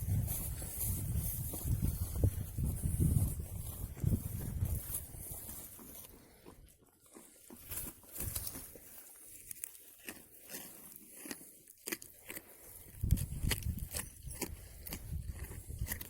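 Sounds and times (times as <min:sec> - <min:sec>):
goats crunching carrots: 0:00.0 - 0:16.0
soft chewing: 0:00.1 - 0:16.0.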